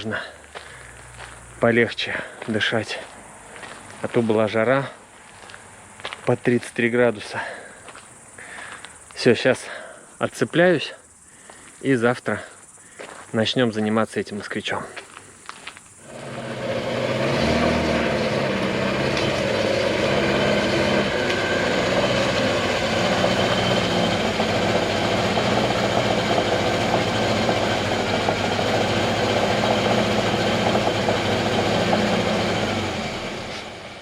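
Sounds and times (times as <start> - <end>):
car engine running: 16.0 - 34.0.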